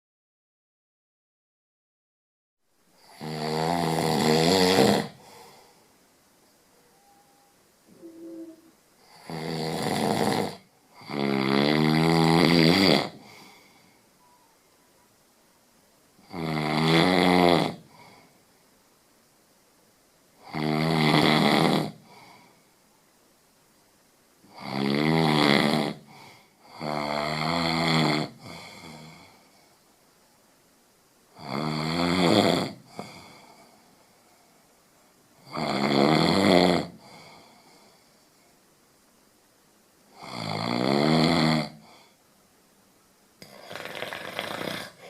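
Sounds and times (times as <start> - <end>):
loud snoring: 3.0 - 5.3, 7.0 - 13.7, 16.2 - 18.1, 20.4 - 22.2, 24.5 - 29.4, 31.4 - 33.4, 35.4 - 37.6, 40.1 - 42.0, 43.4 - 45.0.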